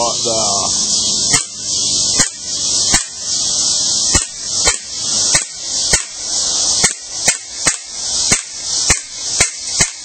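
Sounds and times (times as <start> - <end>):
steady high hiss: 0.0 - 10.0
bb pistol shots: 2.2 - 3.2, 4.1 - 6.2, 6.8 - 10.0.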